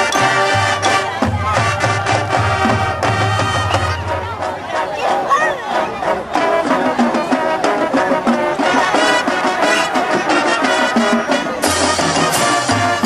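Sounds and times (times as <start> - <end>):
deep low brass part: 0.0 - 4.8
marching band brass playing: 0.0 - 13.0.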